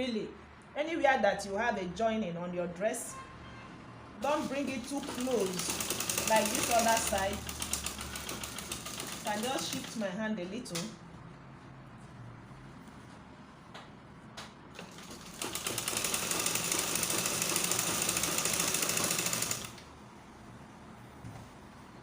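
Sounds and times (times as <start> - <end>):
sewing machine stitching: 4.2 - 10.0, 14.8 - 19.8.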